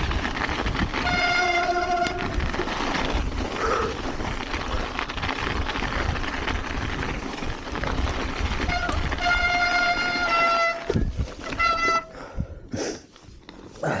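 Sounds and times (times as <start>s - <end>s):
bike rolling downhill: 0.0s - 12.7s
bike brakes squealing: 1.0s - 2.4s, 8.7s - 10.9s, 11.5s - 12.1s.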